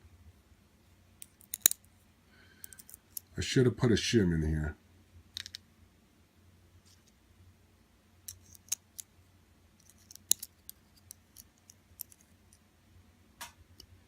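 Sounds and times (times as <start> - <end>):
small metal clicks and taps: 1.2 - 1.8, 9.8 - 12.6.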